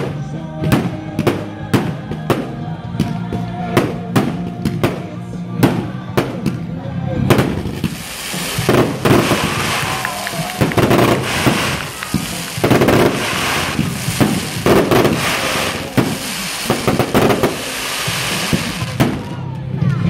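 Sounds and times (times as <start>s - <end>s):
sea surf washing onto beach: 7.9s - 19.0s.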